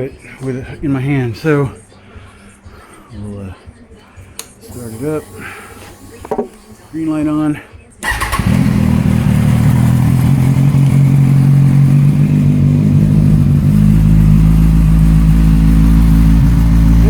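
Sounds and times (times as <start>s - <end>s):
motorcycle engine starting and idling: 8.0s - 17.0s.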